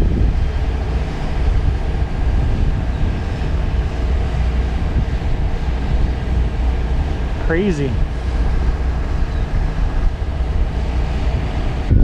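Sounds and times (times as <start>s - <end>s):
vehicle low rumble: 0.0s - 12.0s.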